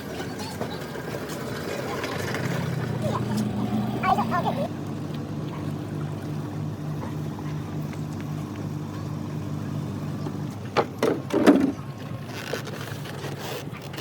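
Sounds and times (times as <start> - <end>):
outboard motor running: 0.0 - 14.0.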